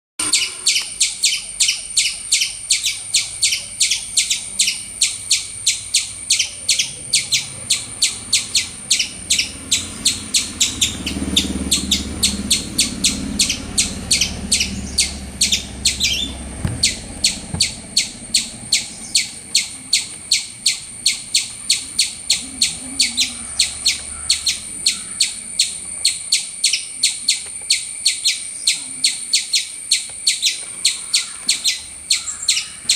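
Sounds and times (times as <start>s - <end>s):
squirrel chirping: 0.2s - 32.9s
low rumble: 7.6s - 25.8s.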